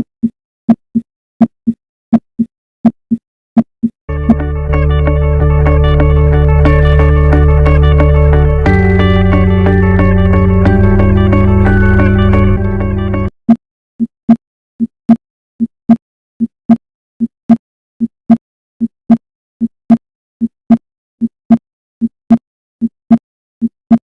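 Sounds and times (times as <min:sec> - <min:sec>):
guitar music: 0:04.1 - 0:13.3.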